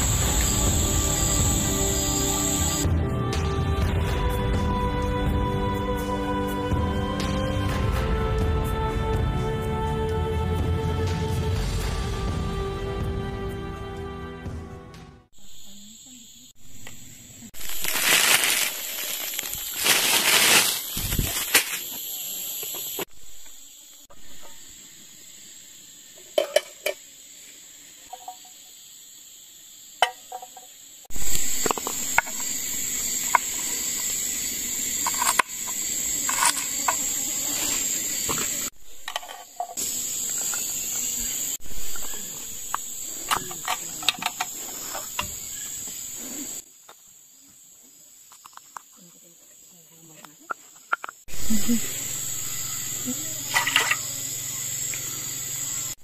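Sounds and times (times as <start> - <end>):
insects chirring: 0.0 - 10.9, 15.3 - 56.0
loud rustling bursts: 17.6 - 21.9.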